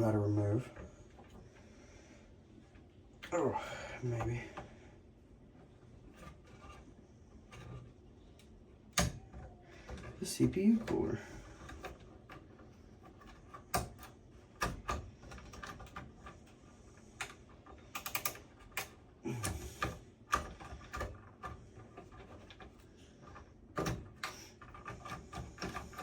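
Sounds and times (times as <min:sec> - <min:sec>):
clicks and knocks of hands working: 0:05.6 - 0:26.0.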